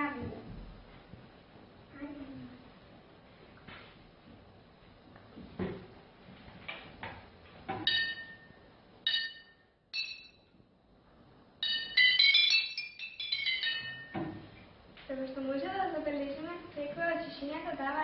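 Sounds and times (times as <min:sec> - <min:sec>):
spoon striking water-filled glass bottles: 0:07.8 - 0:08.5, 0:09.1 - 0:10.4, 0:11.6 - 0:14.5.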